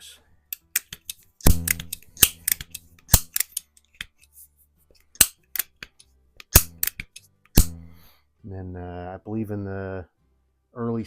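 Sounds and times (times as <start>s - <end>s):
pellet pistol action clicking: 0.5s - 4.2s, 5.1s - 7.9s.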